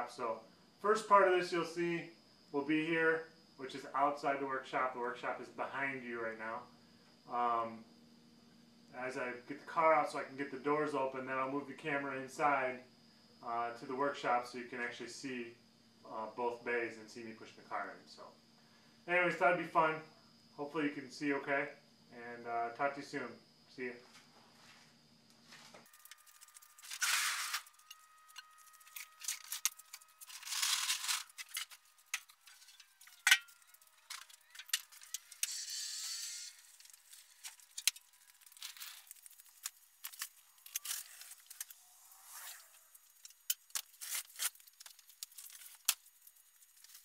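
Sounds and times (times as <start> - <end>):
rapid high-pitched clicks and knocks: 25.8 - 41.8.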